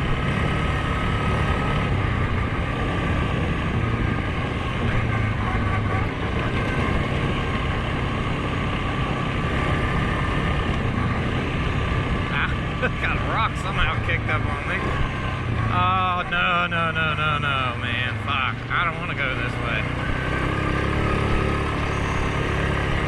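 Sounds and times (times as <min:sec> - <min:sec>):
atv engine running: 0:00.0 - 0:23.0.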